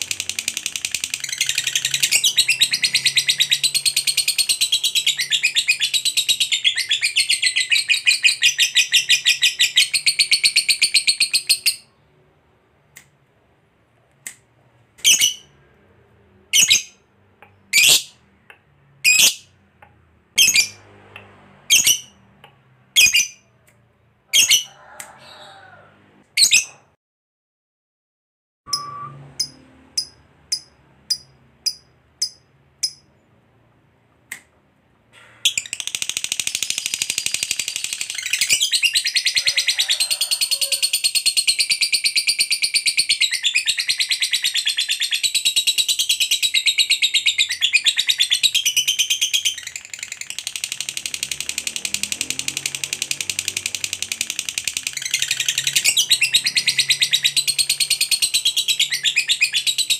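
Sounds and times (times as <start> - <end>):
bird chattering trill: 0.0 - 12.0
bird chirping sharply: 0.0 - 12.2, 15.0 - 15.6, 17.6 - 19.6, 20.4 - 20.9, 21.6 - 22.3, 28.7 - 33.4.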